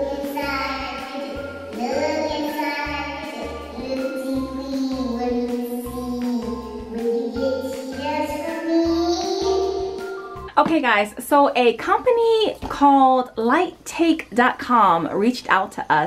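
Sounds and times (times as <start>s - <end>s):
gliding sung melody: 0.0s - 10.5s.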